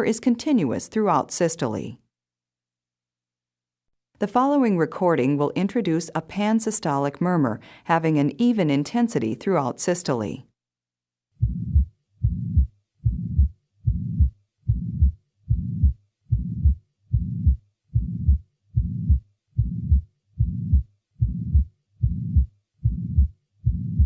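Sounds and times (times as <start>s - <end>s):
heart murmur: 11.4s - 24.0s
heartbeat through stethoscope: 11.4s - 24.0s.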